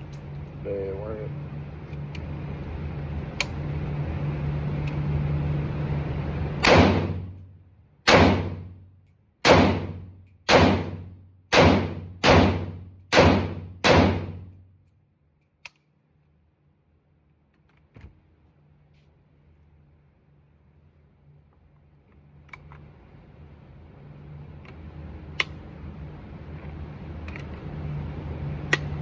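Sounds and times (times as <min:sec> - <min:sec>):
steady hum: 0:00.0 - 0:29.0
gunshots with echo: 0:09.5 - 0:14.4.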